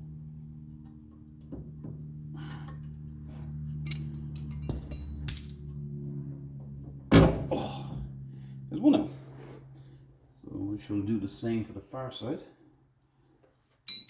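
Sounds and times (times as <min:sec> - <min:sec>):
low steady hum: 0:00.0 - 0:07.1
steel tools clinking on metal: 0:04.4 - 0:05.7.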